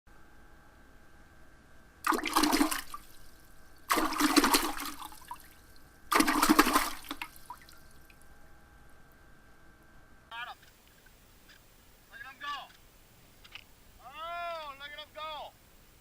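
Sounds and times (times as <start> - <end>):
waves splashing against pier: 2.1 - 3.2, 3.9 - 5.4, 6.1 - 7.7.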